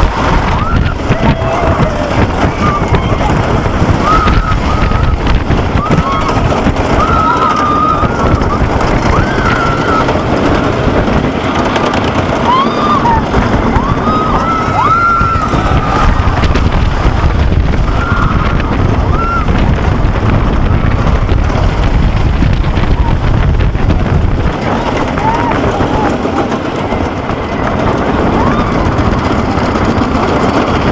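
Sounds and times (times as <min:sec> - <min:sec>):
roller coaster rumbling on track: 0:00.0 - 0:30.9
wind buffeting microphone: 0:00.0 - 0:30.9.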